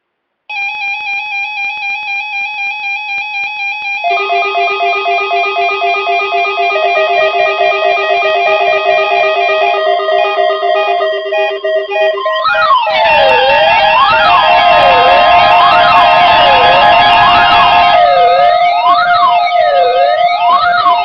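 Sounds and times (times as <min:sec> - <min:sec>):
lower-pitched alarm: 0:00.5 - 0:21.0
weather radio alarm warbling beep: 0:03.4 - 0:21.0.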